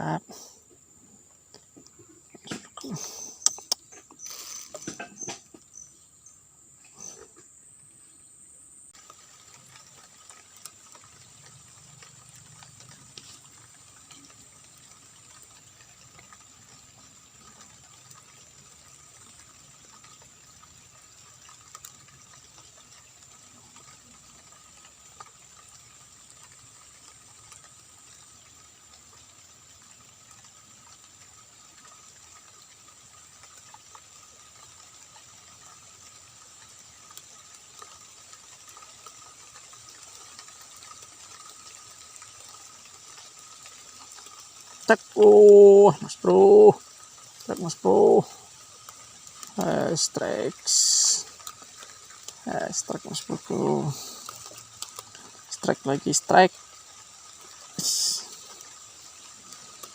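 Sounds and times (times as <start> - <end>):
steady outdoor hiss: 0.0 - 59.9.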